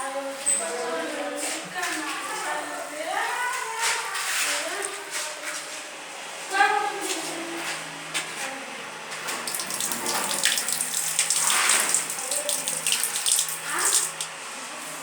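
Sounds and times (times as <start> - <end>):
tap water splashing into basin: 9.3 - 14.4.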